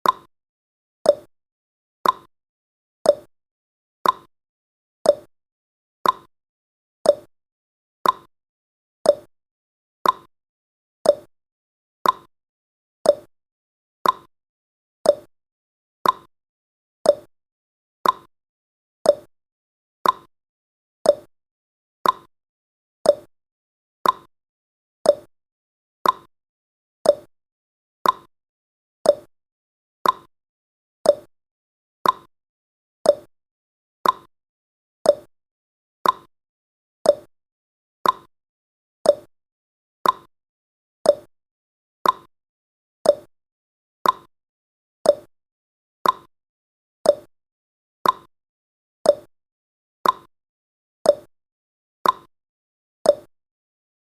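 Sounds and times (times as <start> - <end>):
clock ticking: 14.0 - 14.3, 30.0 - 30.3, 34.0 - 34.3, 38.0 - 38.3, 42.0 - 42.3, 44.0 - 44.3, 46.0 - 46.3, 48.0 - 48.3.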